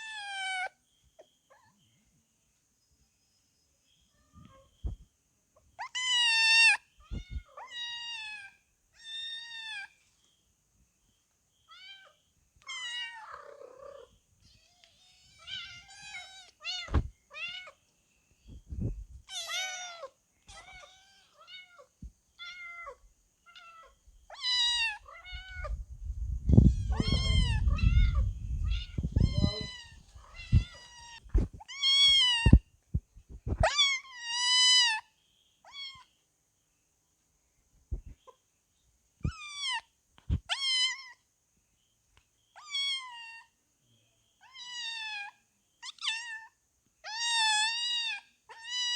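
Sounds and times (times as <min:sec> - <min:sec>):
kittens mewing: 0:26.6 - 0:32.6.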